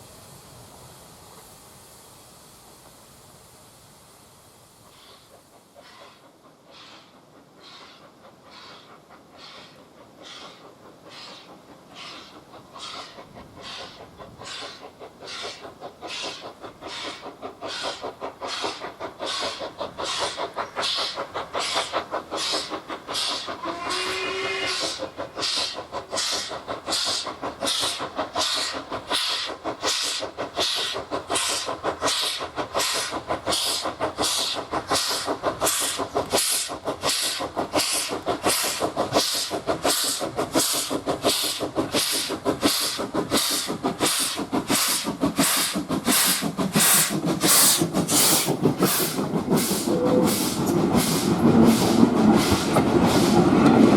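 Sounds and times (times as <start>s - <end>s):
steam locomotive exhaust beating: 0.0s - 53.9s
steam whistle: 23.6s - 25.0s.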